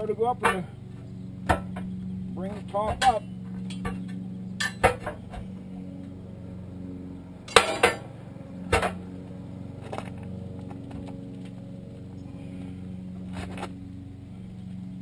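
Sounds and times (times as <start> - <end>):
tire irons clanking on wheel rim: 0.0 - 6.2, 7.4 - 11.6, 12.5 - 13.8
steady low hum: 0.0 - 15.0.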